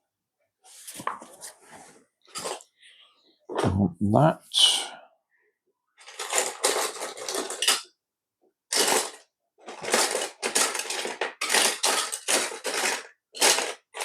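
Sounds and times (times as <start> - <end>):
plastic components clattering: 2.3 - 2.7, 6.0 - 8.0, 8.7 - 14.0.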